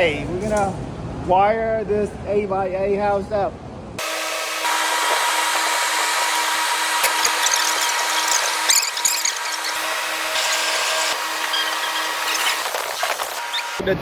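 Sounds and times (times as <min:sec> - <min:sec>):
power tool whining: 0:04.0 - 0:13.9.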